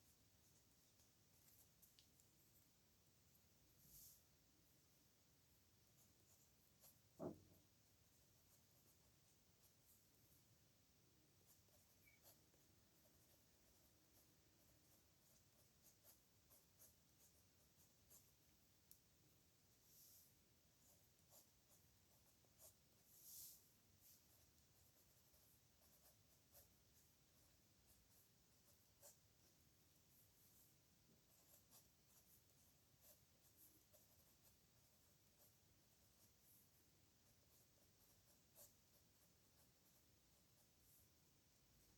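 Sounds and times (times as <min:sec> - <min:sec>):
pen scratching on paper: 0:05.9 - 0:10.4, 0:11.4 - 0:18.4, 0:19.9 - 0:41.2.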